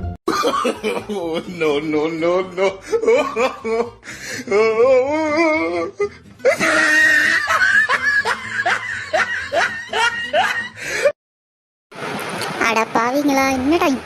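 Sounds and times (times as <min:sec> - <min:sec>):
hearty human laughter: 0:00.3 - 0:11.1.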